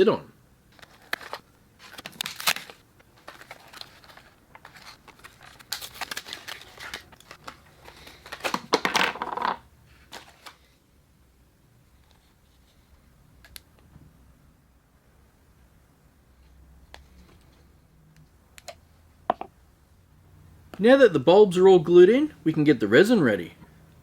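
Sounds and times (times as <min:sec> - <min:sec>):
rustling and crinkling: 0:00.7 - 0:10.7.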